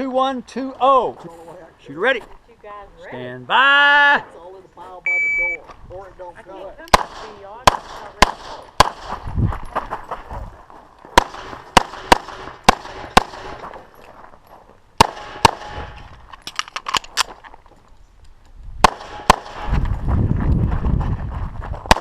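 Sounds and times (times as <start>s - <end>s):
pistol shots: 6.9s - 9.2s, 11.1s - 13.7s, 15.0s - 16.0s, 18.8s - 19.7s.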